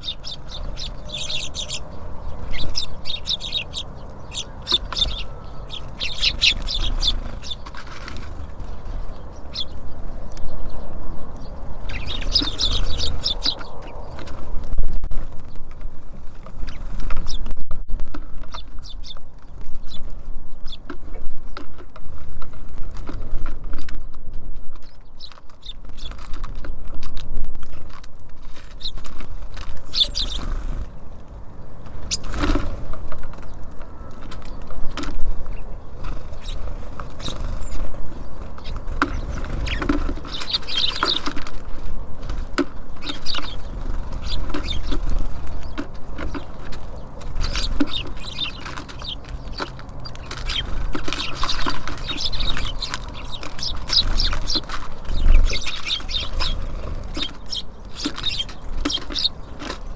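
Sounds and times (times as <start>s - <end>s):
high bird chirps: 0.0s - 7.8s, 8.6s - 14.3s, 29.8s - 30.8s, 34.5s - 41.8s, 42.9s - 59.6s
birds pecking on feeder: 0.0s - 17.5s, 18.1s - 59.9s.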